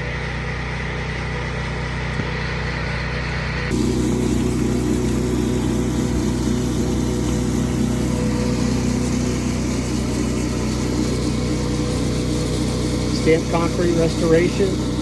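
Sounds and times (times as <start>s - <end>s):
pressure washer engine running: 0.0s - 15.0s
surface cleaner spraying concrete: 3.7s - 15.0s.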